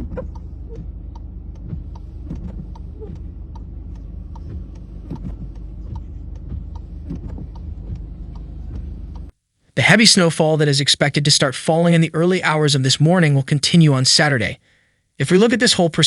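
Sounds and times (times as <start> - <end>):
faint clicks: 0.0 - 9.4
vehicle low rumble: 0.0 - 9.4.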